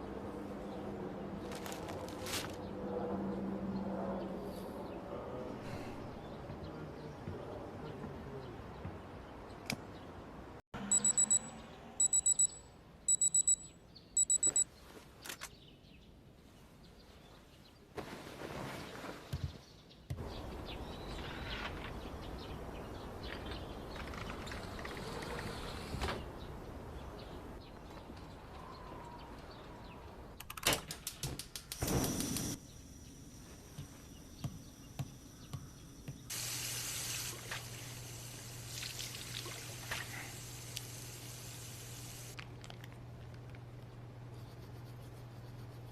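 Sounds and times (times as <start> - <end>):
high electronic beeps: 10.9 - 14.6.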